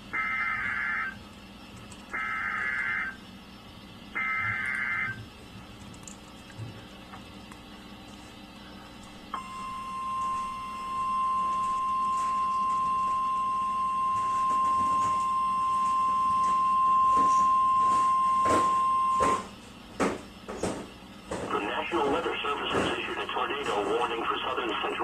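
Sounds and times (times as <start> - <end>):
steady alarm tone: 0.0 - 5.4, 9.2 - 19.6
static crackles: 21.5 - 25.0.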